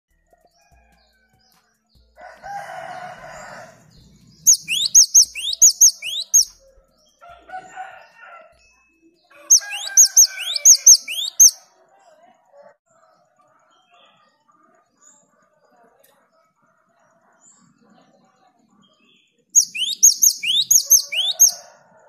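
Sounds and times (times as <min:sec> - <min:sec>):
bird singing high notes: 0:04.4 - 0:06.6, 0:09.5 - 0:11.6, 0:19.6 - 0:21.6
harsh drawn-out bird call: 0:04.4 - 0:06.6, 0:09.4 - 0:11.6, 0:19.6 - 0:21.7.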